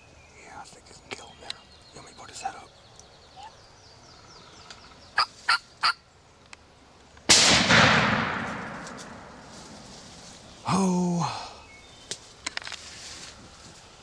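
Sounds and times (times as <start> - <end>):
turkey clucks: 4.7 - 6.0
shotgun blast: 7.3 - 9.4.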